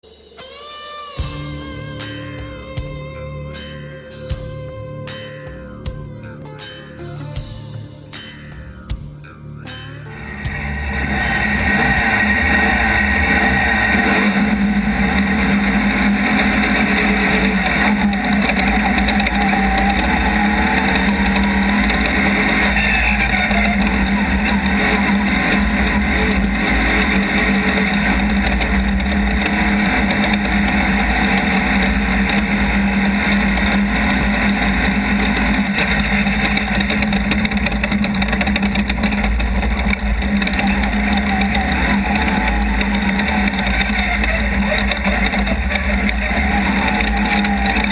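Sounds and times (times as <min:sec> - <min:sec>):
race car engine revving: 0:06.6 - 0:47.9.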